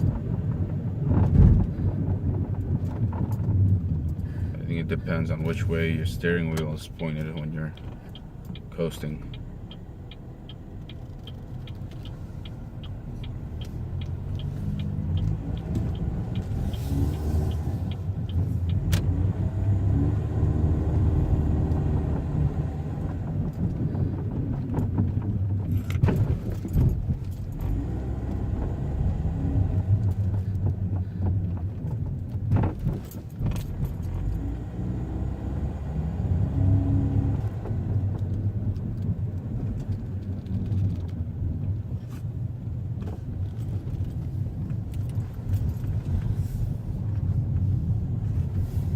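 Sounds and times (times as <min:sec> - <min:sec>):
car engine and road noise: 0:00.0 - 0:48.9
rapid light ticking: 0:05.6 - 0:16.9.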